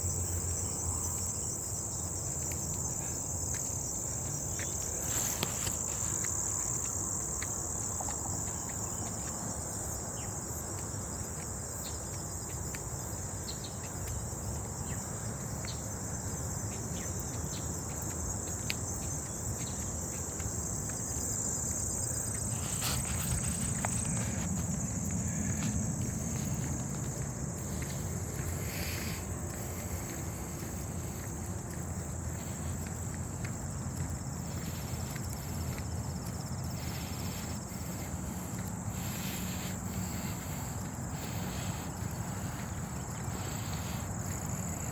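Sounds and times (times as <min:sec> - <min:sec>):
insects trilling: 0:00.0 - 0:44.9.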